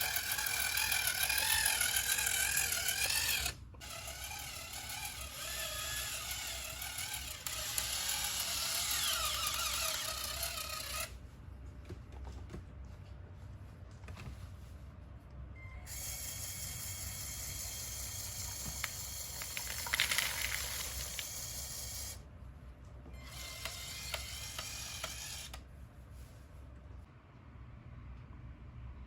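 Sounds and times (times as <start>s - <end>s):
small electric motors whirring: 0.0s - 11.2s, 15.9s - 22.2s, 23.1s - 25.6s
plastic gear clicks: 18.7s - 21.3s.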